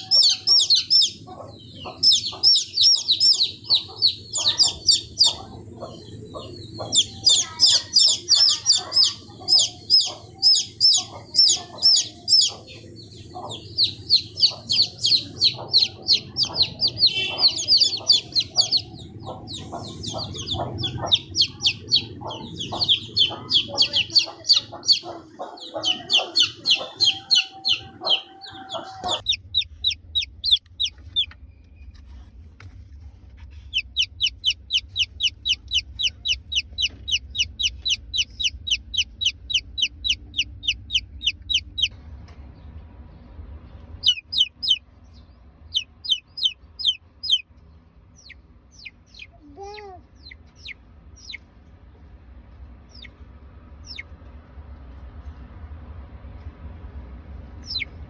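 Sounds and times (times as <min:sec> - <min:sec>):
chicken calls: 0:00.0 - 0:31.4, 0:33.6 - 0:41.9, 0:44.0 - 0:44.8, 0:45.7 - 0:47.5, 0:53.8 - 0:54.1, 0:57.6 - 0:57.9
chicks peeping: 0:00.0 - 0:42.8, 0:43.7 - 0:52.0, 0:52.7 - 0:54.4, 0:57.5 - 0:58.0.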